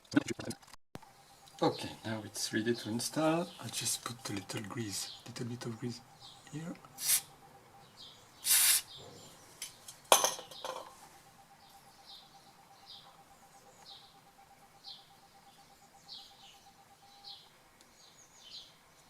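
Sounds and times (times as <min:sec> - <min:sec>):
bird chirping: 0:01.1 - 0:10.8, 0:11.4 - 0:19.0.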